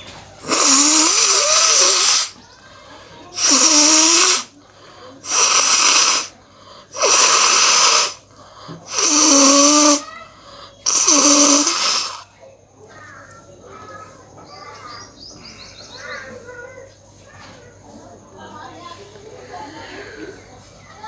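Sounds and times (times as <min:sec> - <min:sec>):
person blowing nose: 0:00.4 - 0:02.4, 0:03.4 - 0:04.5, 0:05.2 - 0:06.3, 0:06.9 - 0:08.2, 0:08.9 - 0:10.1, 0:10.8 - 0:12.2.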